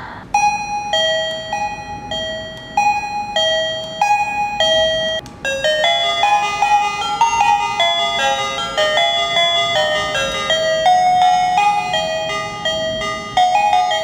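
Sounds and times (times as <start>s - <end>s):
electronic doorbell chime: 0.3s - 14.0s.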